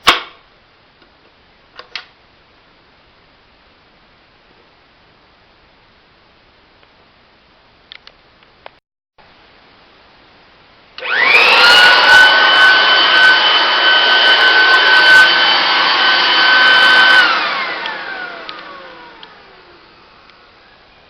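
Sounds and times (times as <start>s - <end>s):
electric blower motor whine: 11.0s - 21.0s.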